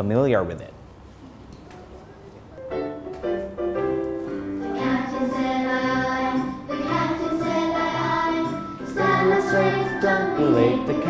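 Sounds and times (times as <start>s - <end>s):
voices singing: 4.7s - 11.0s.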